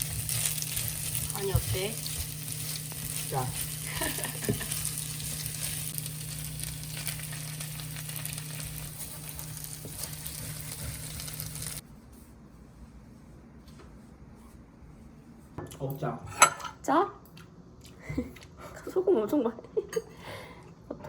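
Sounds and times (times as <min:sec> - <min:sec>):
food sizzling in a frying pan: 0:00.0 - 0:11.8
steady low hum: 0:00.0 - 0:15.6.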